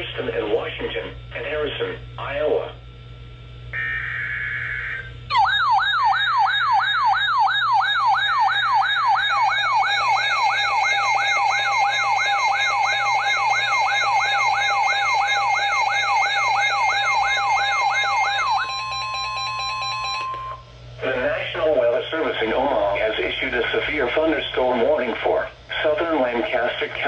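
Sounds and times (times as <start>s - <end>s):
electronic siren attention signal: 3.7s - 20.6s
digital header data tones: 3.8s - 21.2s.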